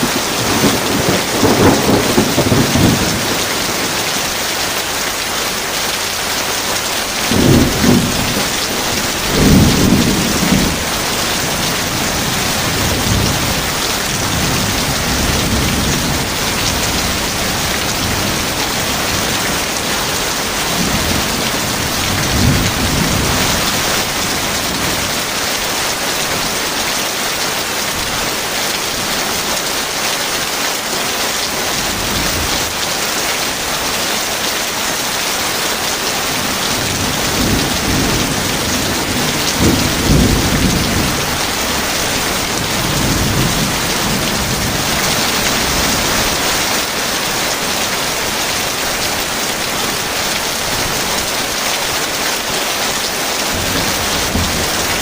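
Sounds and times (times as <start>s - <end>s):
thunder rumbling: 0.0s - 4.0s, 7.3s - 25.7s, 36.2s - 47.3s, 53.5s - 55.0s
heavy rain falling: 0.0s - 55.0s.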